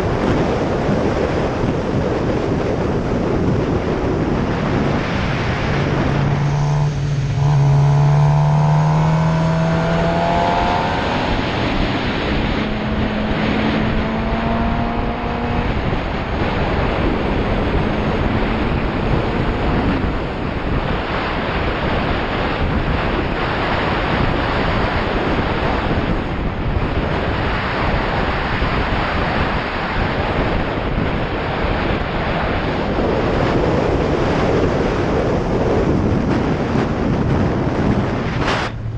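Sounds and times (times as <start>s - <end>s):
wind buffeting microphone: 0.0s - 38.9s
low droning tone: 4.4s - 20.6s.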